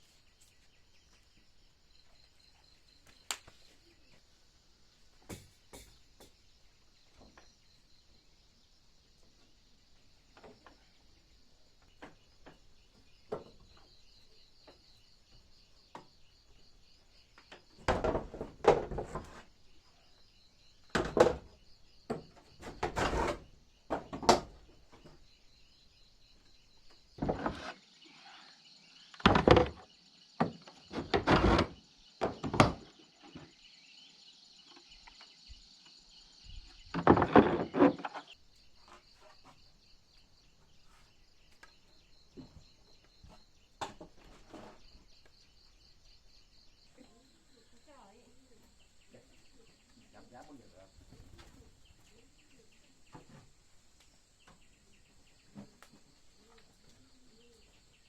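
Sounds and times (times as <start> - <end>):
insects chirring: 0.0 - 58.0.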